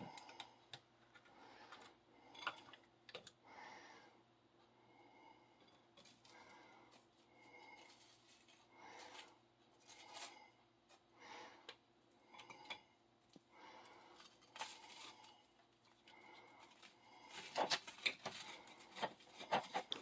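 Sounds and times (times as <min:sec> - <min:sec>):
knife scraping toast: 0:17.3 - 0:20.0.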